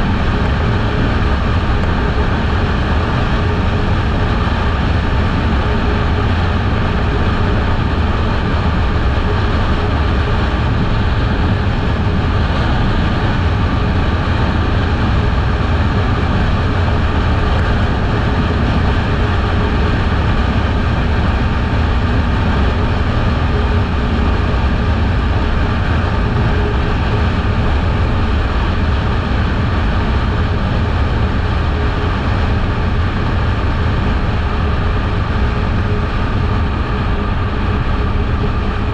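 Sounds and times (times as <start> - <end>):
motorcycle engine running steadily: 0.0 - 38.9
wind rushing on microphone: 0.0 - 38.9.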